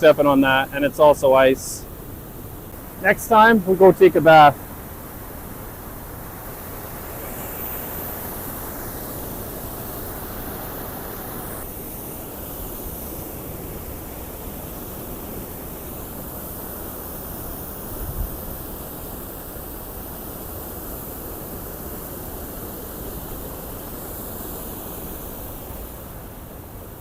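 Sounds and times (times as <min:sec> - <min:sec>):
waterfall rushing: 0:00.0 - 0:02.0, 0:02.6 - 0:12.4.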